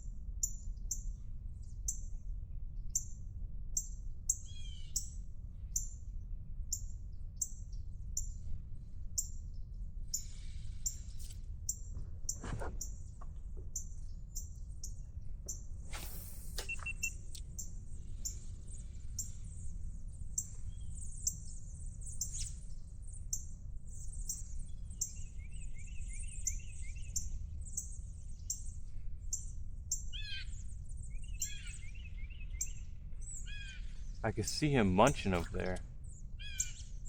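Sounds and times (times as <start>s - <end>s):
downward-sweeping bird calls: 30.2s - 35.7s
low steady rumble: 32.2s - 36.4s.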